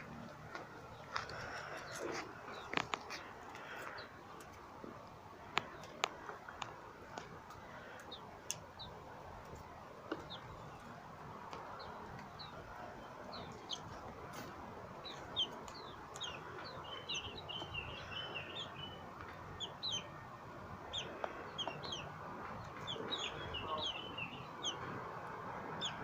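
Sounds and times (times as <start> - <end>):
birds chirping: 0.0 - 26.0.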